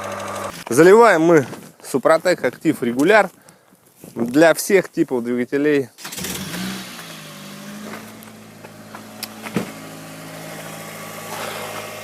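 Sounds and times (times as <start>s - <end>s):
car engine idling: 0.0s - 0.6s, 6.1s - 12.0s.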